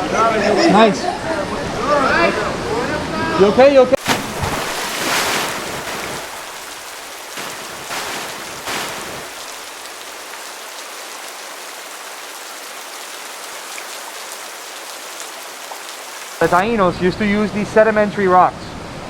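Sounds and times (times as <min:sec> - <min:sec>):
rushing river water: 0:00.0 - 0:16.8
water splashing: 0:04.0 - 0:16.6.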